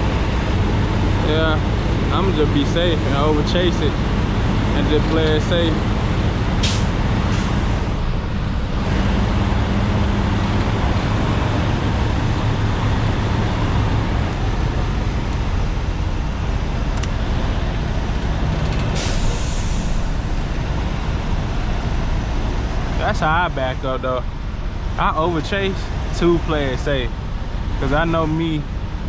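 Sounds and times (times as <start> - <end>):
diesel truck engine running: 0.0 - 29.0
air hiss: 19.0 - 20.4.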